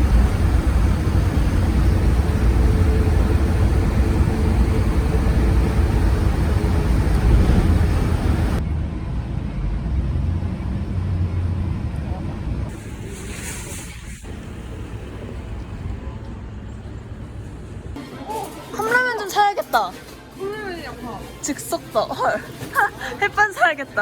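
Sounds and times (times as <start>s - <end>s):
car road and engine rumble: 0.0s - 18.0s.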